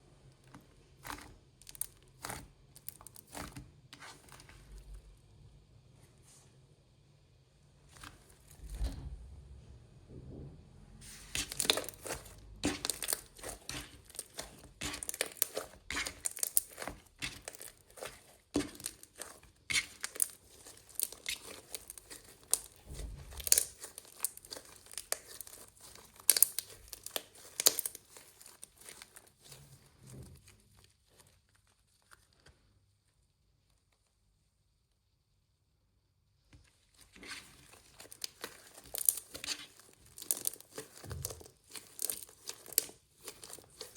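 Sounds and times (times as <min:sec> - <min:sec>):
slime sticky clicks and crackles: 0:11.4 - 0:29.6, 0:37.2 - 0:43.9.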